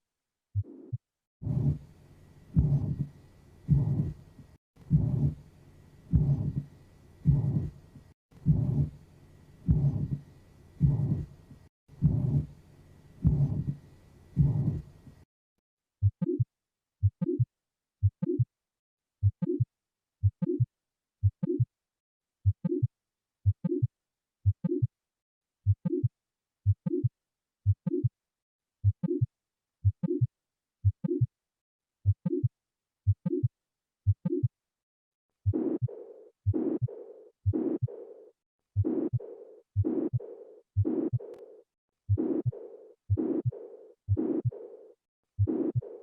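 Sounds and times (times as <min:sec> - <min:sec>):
heart murmur: 0:00.6 - 0:01.8, 0:02.5 - 0:03.1, 0:03.7 - 0:04.2, 0:04.8 - 0:05.4, 0:06.1 - 0:07.8, 0:08.4 - 0:09.0, 0:09.7 - 0:10.2, 0:10.8 - 0:11.3, 0:11.9 - 0:12.6, 0:13.2 - 0:13.8, 0:14.4 - 0:14.9, 0:16.0 - 0:16.4, 0:22.4 - 0:24.9, 0:25.7 - 0:26.1, 0:26.7 - 0:27.1, 0:27.7 - 0:28.1, 0:28.8 - 0:31.3, 0:32.0 - 0:32.5, 0:33.1 - 0:33.5, 0:34.1 - 0:34.5, 0:35.4 - 0:38.0, 0:38.8 - 0:41.3, 0:42.1 - 0:44.7, 0:45.4 - 0:46.0
heartbeat thuds: 0:01.4 - 0:01.8, 0:02.5 - 0:03.1, 0:03.7 - 0:04.2, 0:04.8 - 0:05.4, 0:06.1 - 0:07.7, 0:08.4 - 0:09.0, 0:09.7 - 0:10.2, 0:10.8 - 0:11.3, 0:11.9 - 0:12.6, 0:13.2 - 0:13.8, 0:14.4 - 0:14.8, 0:22.4 - 0:22.7, 0:24.5 - 0:24.8, 0:26.7 - 0:27.0, 0:27.7 - 0:27.9, 0:32.1 - 0:32.4, 0:39.8 - 0:40.2, 0:40.8 - 0:41.3, 0:42.1 - 0:44.6, 0:45.4 - 0:46.0.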